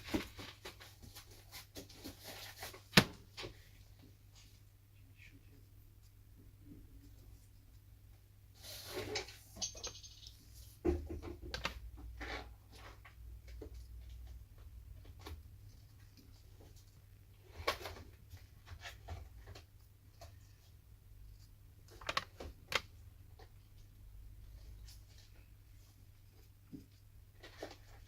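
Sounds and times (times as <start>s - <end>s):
plastic parts and tools clicking: 21.9s - 23.5s.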